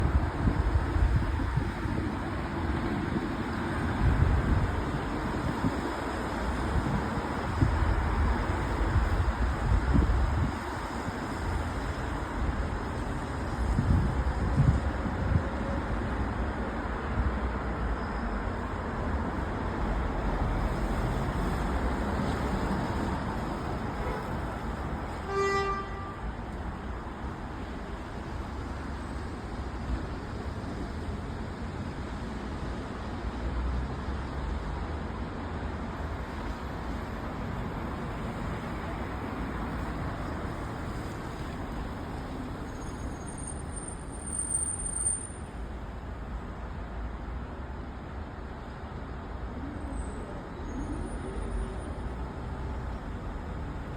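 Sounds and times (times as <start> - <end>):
city street traffic: 0.0 - 53.9
car horn toot: 25.3 - 26.2.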